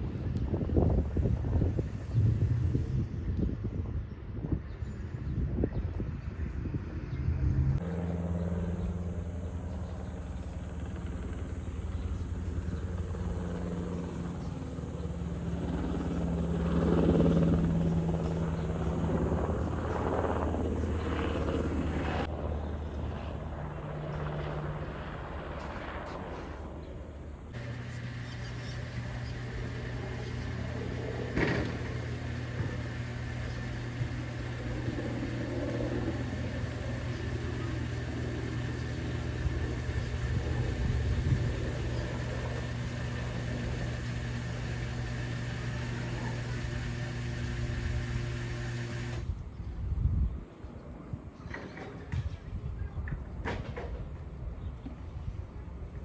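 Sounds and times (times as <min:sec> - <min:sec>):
heavy engine humming: 0:27.6 - 0:49.3.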